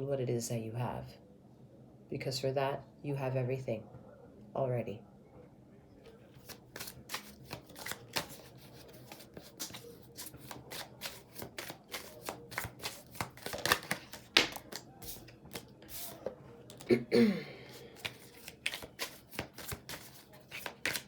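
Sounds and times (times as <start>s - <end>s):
cards being shuffled: 6.3s - 16.9s, 17.7s - 21.0s.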